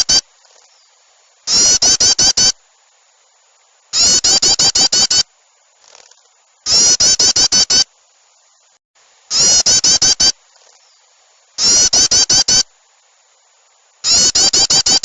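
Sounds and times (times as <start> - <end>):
faint hiss: 0.0 - 15.0
excited bird calls: 1.5 - 2.6, 4.0 - 5.2, 6.1 - 7.9, 9.3 - 11.0, 11.6 - 12.7, 14.0 - 15.0.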